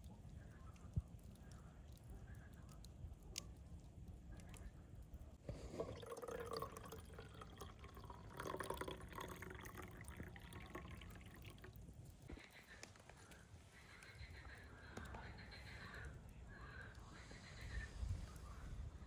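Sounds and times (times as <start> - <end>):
liquid pouring and dripping: 0.0 - 14.0.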